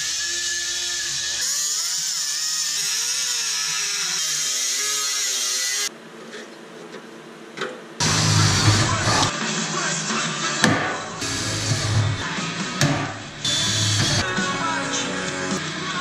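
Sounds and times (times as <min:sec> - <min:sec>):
power tool cutting steel: 0:00.0 - 0:05.9, 0:08.0 - 0:09.3, 0:11.2 - 0:14.3.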